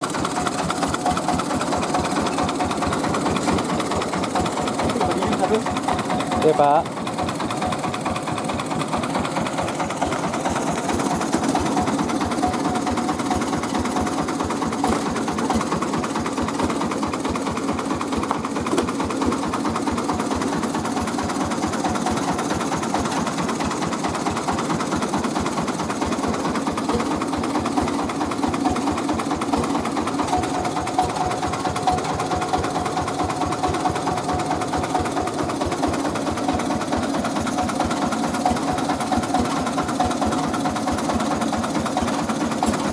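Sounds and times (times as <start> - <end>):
rice milling machine running: 0.0 - 42.9.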